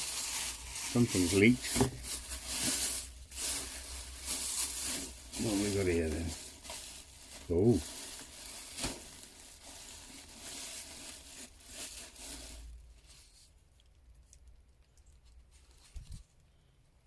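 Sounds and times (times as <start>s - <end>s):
paper packaging crinkling and tearing: 0.0s - 13.5s
faint handling noise: 11.8s - 17.0s.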